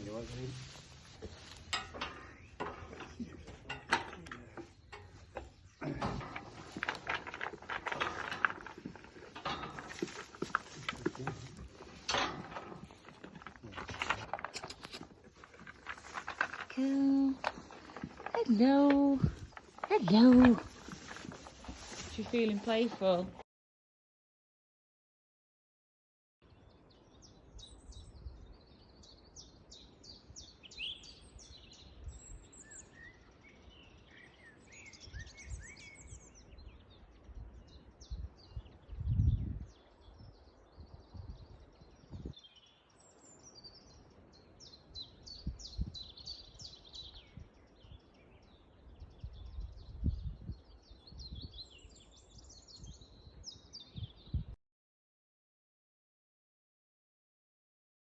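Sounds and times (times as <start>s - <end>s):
songbirds chirping: 0.0s - 23.4s, 26.5s - 54.6s
low rumbles and thumps: 0.6s - 23.4s.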